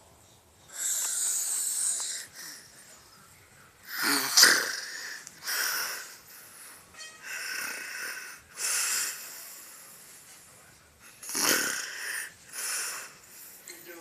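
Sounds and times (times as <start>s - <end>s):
heavy hissing snoring: 0.7s - 2.8s, 3.8s - 10.3s, 11.1s - 13.6s.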